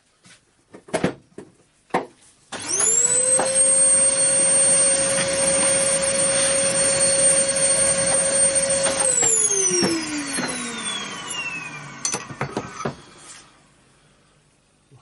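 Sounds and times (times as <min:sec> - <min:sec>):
electric motor whine spinning down: 0:02.6 - 0:13.7.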